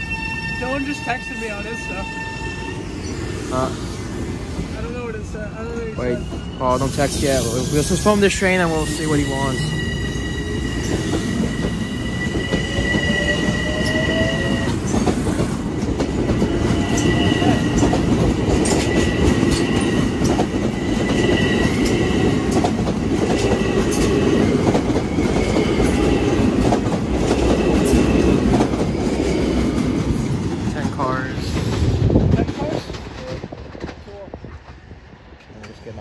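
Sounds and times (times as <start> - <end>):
high wheel squeal: 0.0 - 3.7, 5.9 - 14.9
train wheels rumbling and clicking: 4.4 - 36.0.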